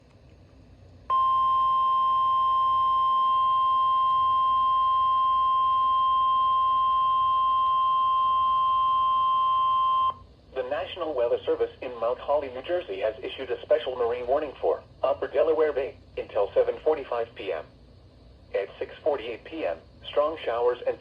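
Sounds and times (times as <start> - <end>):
steady warning alarm tone: 1.1 - 10.2
faint radio hiss: 9.9 - 21.0.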